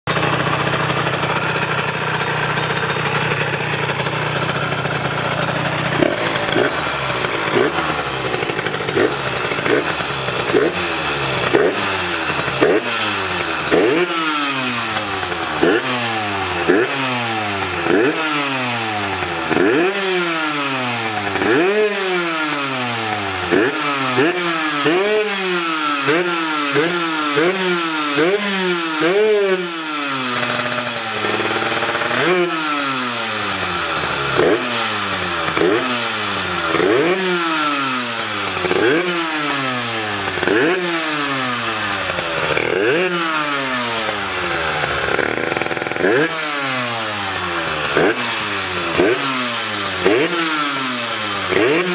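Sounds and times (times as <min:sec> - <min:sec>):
two-stroke engine revving: 0:00.0 - 0:51.9.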